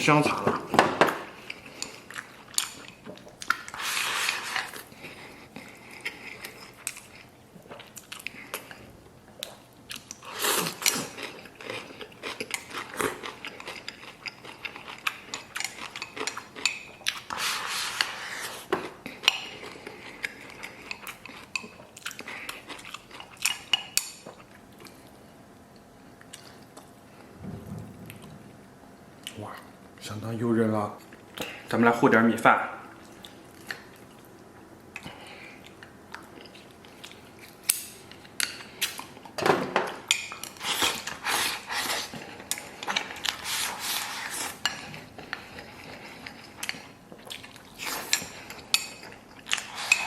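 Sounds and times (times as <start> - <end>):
wet chewing of meat: 1.4 - 26.9, 40.2 - 50.0.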